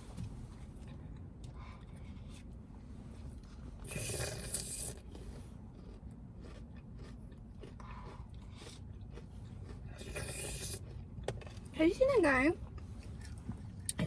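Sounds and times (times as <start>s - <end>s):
chewing close to microphone: 3.8s - 11.6s.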